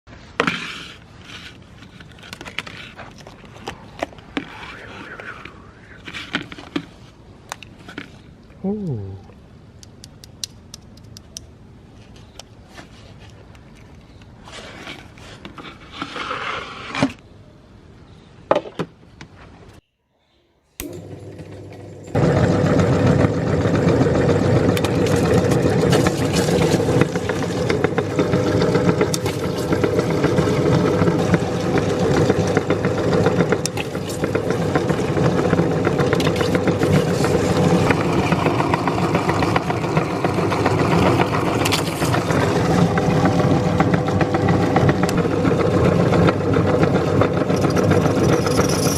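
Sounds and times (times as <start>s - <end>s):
handling clicks and scrapes: 0.4s - 8.4s, 10.8s - 17.2s
meat grinder motor humming: 20.8s - 48.9s.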